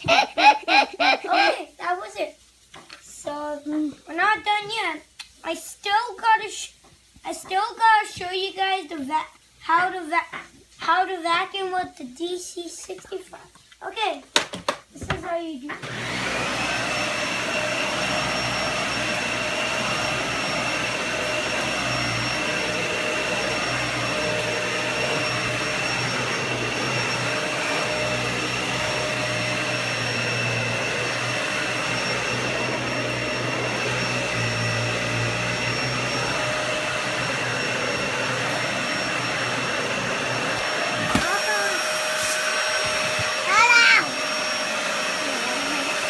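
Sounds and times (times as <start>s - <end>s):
vacuum cleaner whining: 15.7s - 46.0s.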